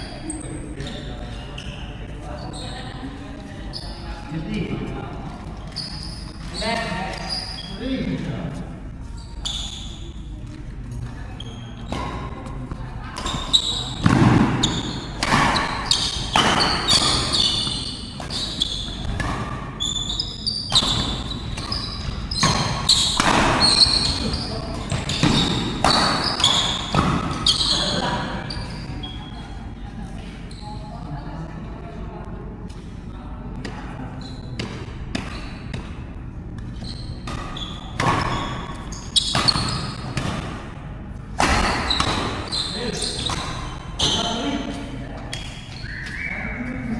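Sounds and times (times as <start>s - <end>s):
shoes squeaking on court: 0.0s - 3.0s, 5.4s - 7.8s, 9.0s - 29.5s, 33.7s - 36.0s, 36.6s - 40.5s, 41.5s - 46.8s
racket hitting shuttlecock: 14.0s - 18.3s, 22.4s - 24.2s, 37.2s - 40.7s, 41.4s - 42.5s.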